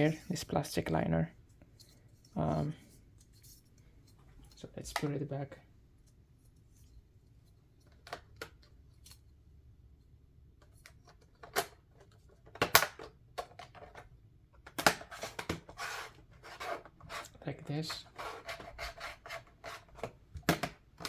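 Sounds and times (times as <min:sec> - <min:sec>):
plastic rubbing scrape: 0:15.0 - 0:20.2.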